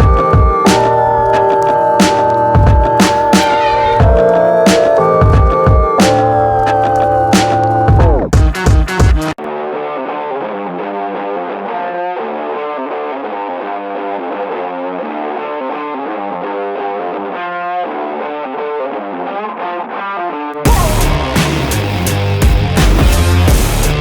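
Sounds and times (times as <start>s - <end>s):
loud music with drums: 0.0s - 1.0s, 2.0s - 6.3s, 7.3s - 9.4s, 20.7s - 24.0s
thin muffled melodic music: 0.0s - 8.2s.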